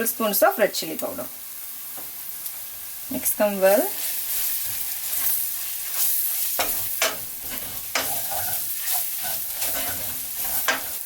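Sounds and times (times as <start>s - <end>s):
onions sizzling in hot oil: 0.0s - 11.0s
utensil scraping a pan: 4.3s - 11.0s.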